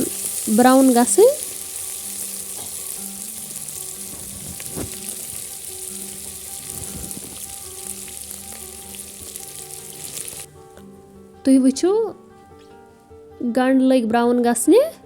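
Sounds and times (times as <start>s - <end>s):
onions sizzling in oil: 0.0s - 10.5s.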